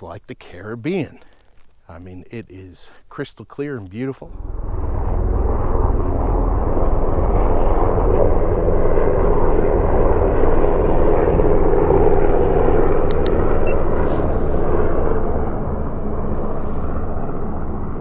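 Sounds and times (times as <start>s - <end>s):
helicopters passing overhead: 4.2s - 18.0s.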